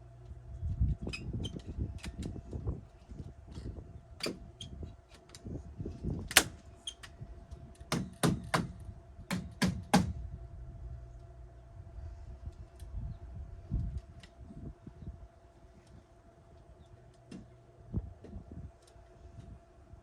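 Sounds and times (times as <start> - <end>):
faint steady hum: 0.0 - 20.0
sharp knocks: 7.9 - 8.7.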